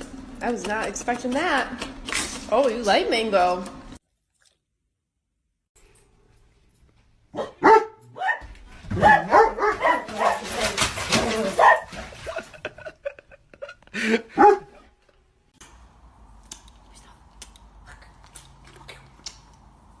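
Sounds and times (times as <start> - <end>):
dog barking: 7.3 - 12.0, 14.3 - 14.8.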